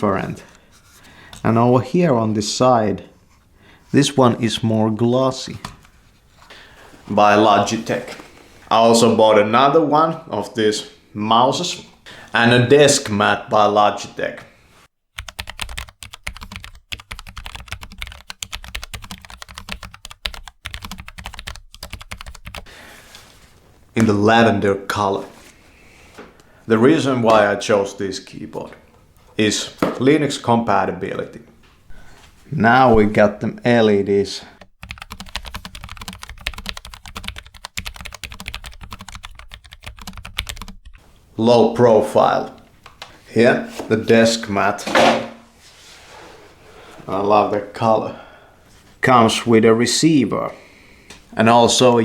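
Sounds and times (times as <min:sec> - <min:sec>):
fast typing on mechanical keyboard: 0:15.2 - 0:22.7, 0:34.8 - 0:40.9.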